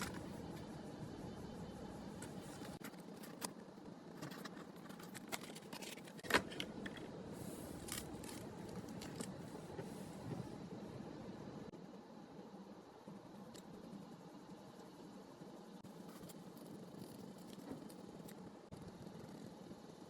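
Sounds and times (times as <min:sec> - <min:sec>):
packaging clicks and rustles: 0:04.2 - 0:07.0, 0:07.8 - 0:09.4.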